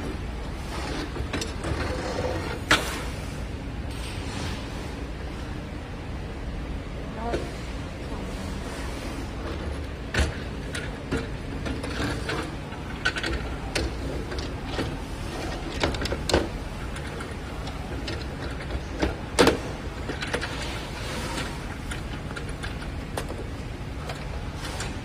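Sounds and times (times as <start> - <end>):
steady low hum: 0.0 - 25.0
metal parts clicking and knocking: 10.1 - 25.0.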